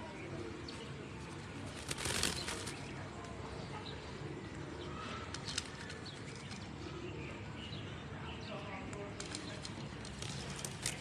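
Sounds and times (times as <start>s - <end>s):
faint bird chirps: 0.0s - 8.7s.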